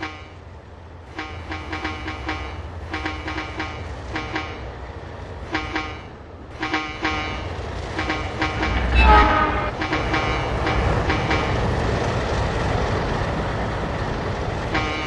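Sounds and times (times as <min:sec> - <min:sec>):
train rumble: 0:00.0 - 0:15.0
locomotive horn: 0:05.5 - 0:11.6
locomotive bell ringing: 0:07.3 - 0:11.6.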